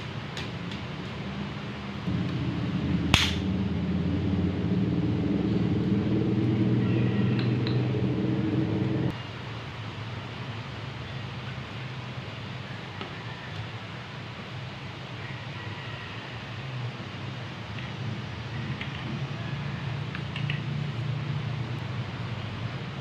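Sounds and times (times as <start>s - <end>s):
sharp click: 3.1s - 3.5s.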